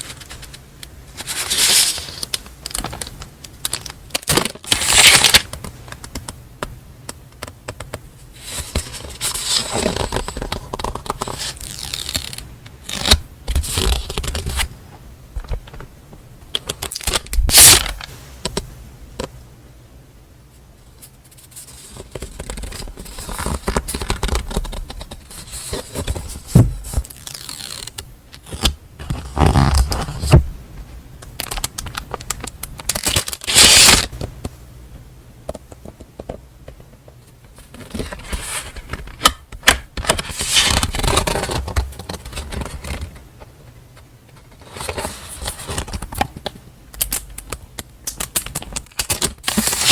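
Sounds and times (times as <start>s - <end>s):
paper rustling and sliding: 0.0s - 5.6s, 33.0s - 34.1s, 37.6s - 39.2s, 40.0s - 43.2s.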